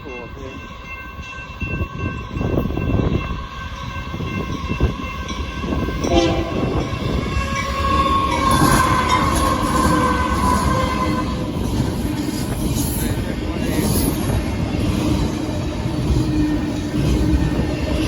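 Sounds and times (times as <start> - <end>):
train rumble: 0.0 - 18.0
locomotive air horn: 6.0 - 11.6.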